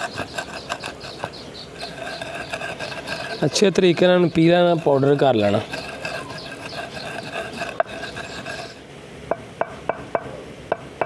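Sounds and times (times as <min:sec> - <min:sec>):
pestle grinding in mortar: 0:00.0 - 0:08.8.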